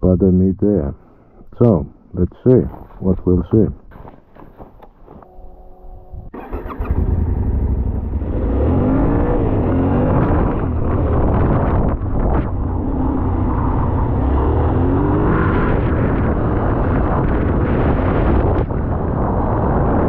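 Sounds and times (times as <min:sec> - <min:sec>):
motorcycle engine accelerating: 0:05.8 - 0:20.0.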